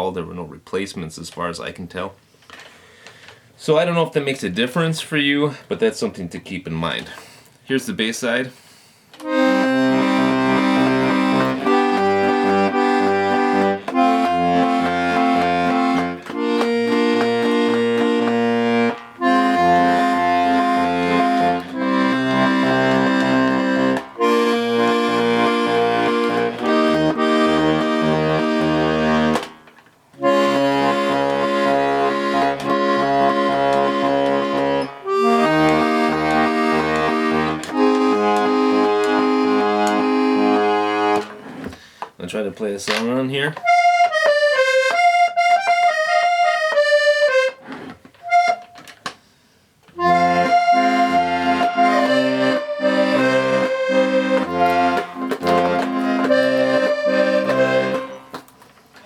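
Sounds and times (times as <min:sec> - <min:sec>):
accordion bass notes and chords: 0:09.1 - 0:41.8, 0:43.2 - 0:49.0, 0:49.7 - 0:58.7.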